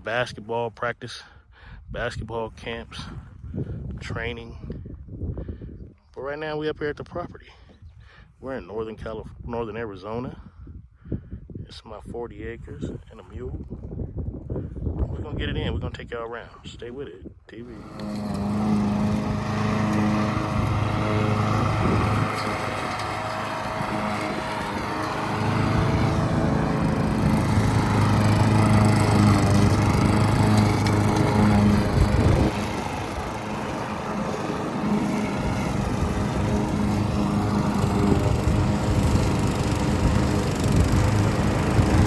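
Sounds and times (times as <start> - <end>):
engine running: 17.7 - 42.0.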